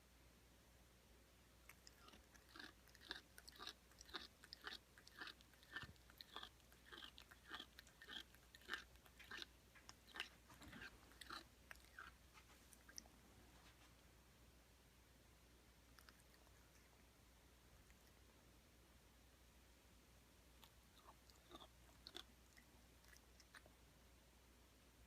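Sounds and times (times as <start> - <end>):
cat grinding teeth: 1.7 - 13.2, 15.9 - 17.0, 20.6 - 23.7.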